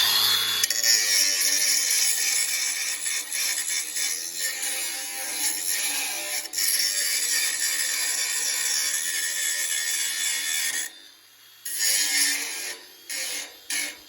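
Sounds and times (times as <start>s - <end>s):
angle grinder grinding steel: 0.0s - 10.9s.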